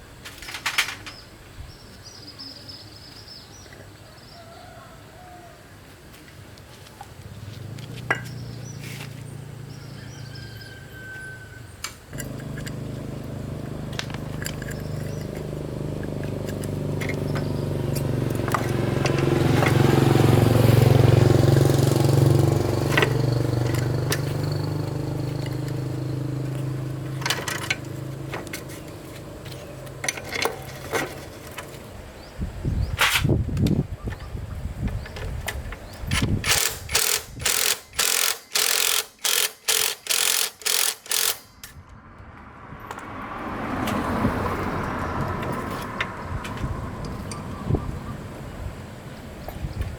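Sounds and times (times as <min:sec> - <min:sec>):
small motorbike engine running: 0:07.1 - 0:11.3, 0:12.1 - 0:31.8, 0:35.3 - 0:41.7
sharp clicks: 0:36.1 - 0:42.0.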